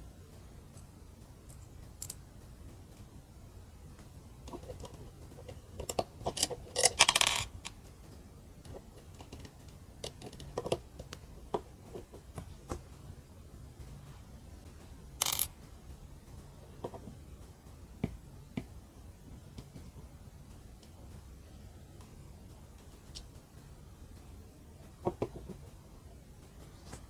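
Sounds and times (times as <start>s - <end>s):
plastic bricks clicking: 5.8s - 7.7s, 15.2s - 15.5s.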